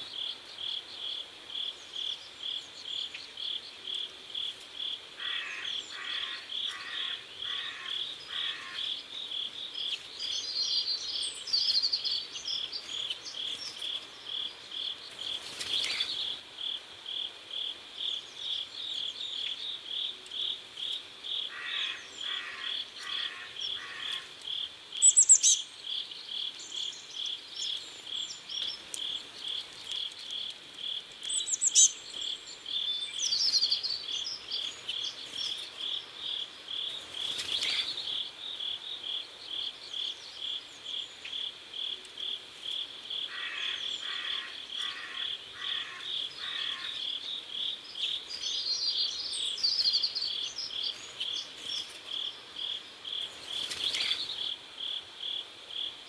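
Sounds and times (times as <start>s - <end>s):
crickets chirping: 0.1s - 56.0s
bird calls: 5.2s - 16.4s, 18.1s - 30.5s, 43.2s - 54.6s.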